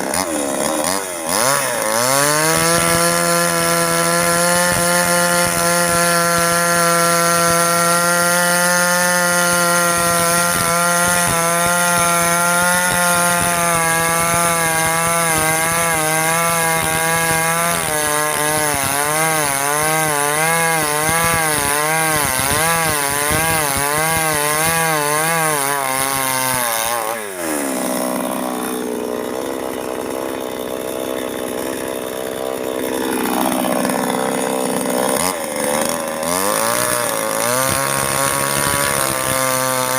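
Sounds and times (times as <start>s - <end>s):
two-stroke chainsaw cutting: 0.0s - 39.9s.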